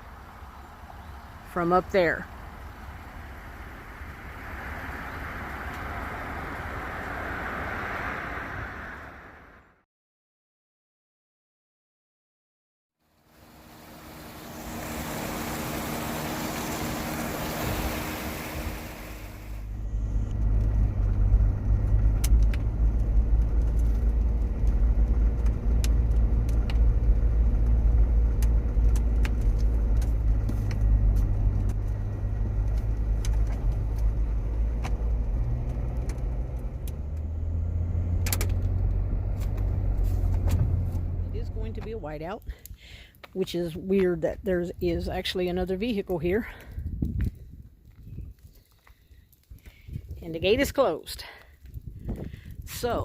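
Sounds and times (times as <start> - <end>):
deep low car rumble: 0.0 - 9.8, 13.2 - 53.0
car cabin hiss: 13.7 - 20.2
sharp clicks and ticks: 21.8 - 26.9.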